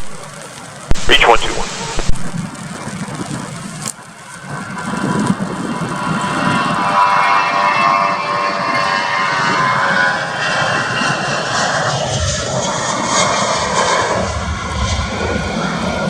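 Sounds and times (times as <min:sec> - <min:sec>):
jet engines whining: 0:00.0 - 0:00.3, 0:00.9 - 0:02.4.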